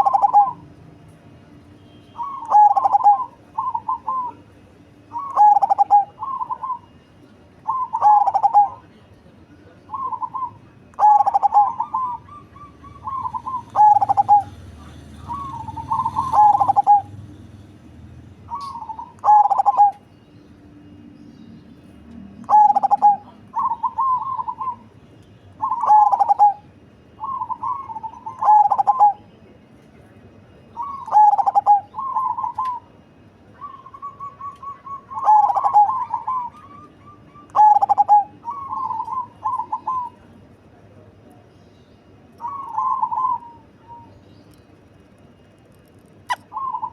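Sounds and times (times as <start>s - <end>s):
dove cooing: 0.0s - 0.7s, 2.2s - 4.5s, 5.1s - 7.0s, 7.6s - 8.9s, 9.9s - 17.2s, 18.5s - 20.0s, 22.4s - 24.9s, 25.6s - 29.3s, 30.8s - 33.0s, 33.6s - 40.3s, 42.4s - 44.2s, 46.3s - 46.9s.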